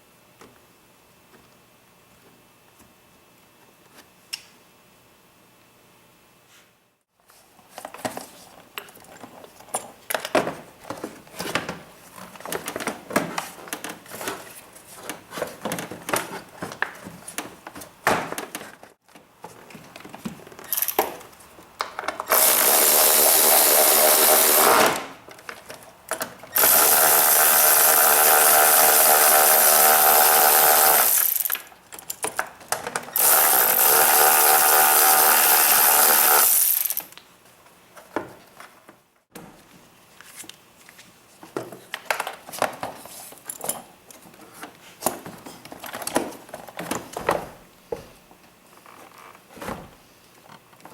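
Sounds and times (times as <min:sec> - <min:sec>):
small power tool motor: 0:22.3 - 0:25.0, 0:26.6 - 0:31.6, 0:33.2 - 0:37.2.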